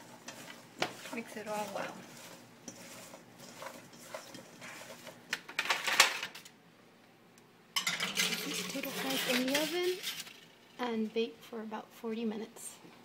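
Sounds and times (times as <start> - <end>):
fries tossed in a bowl: 0.0 - 6.5, 7.8 - 11.2.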